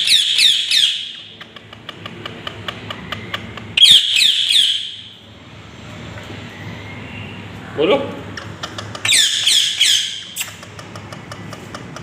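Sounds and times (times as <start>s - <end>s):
parrot screeching: 9.0s - 10.3s.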